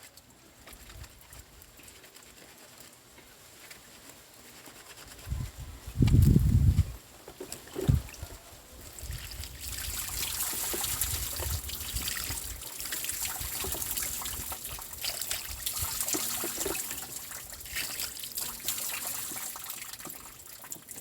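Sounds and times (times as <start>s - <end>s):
running water splashing: 7.4s - 21.0s.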